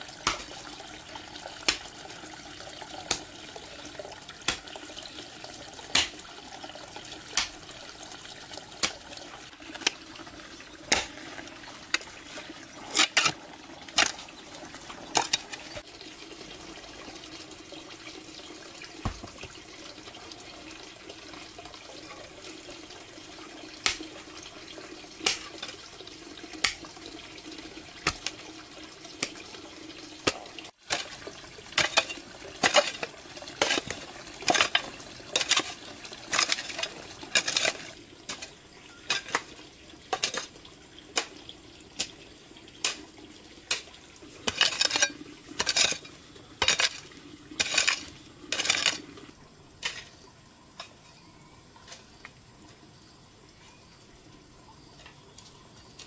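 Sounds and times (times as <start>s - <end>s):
water running in a sink: 0.0s - 56.0s
dishes and utensils clinking: 44.5s - 49.1s.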